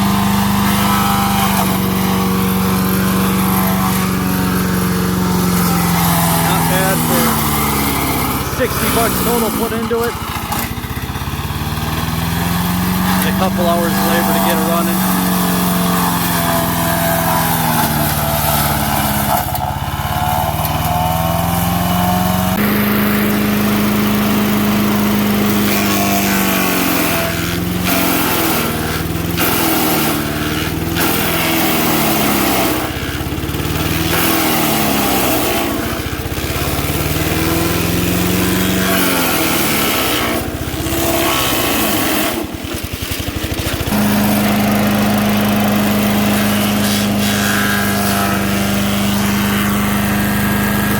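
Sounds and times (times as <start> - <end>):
wood chipper engine bogging down: 0.0 - 50.9.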